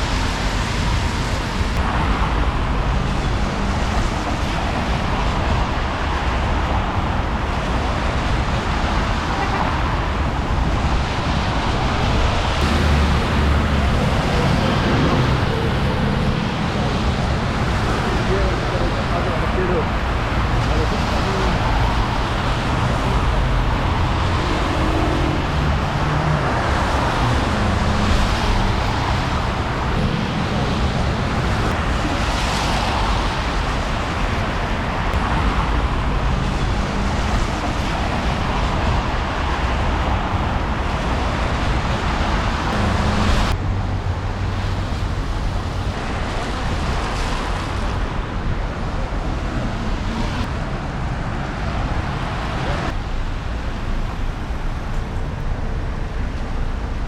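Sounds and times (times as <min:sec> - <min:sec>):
passing vehicles: 0:00.0 - 0:57.0
low engine hum: 0:12.4 - 0:46.5.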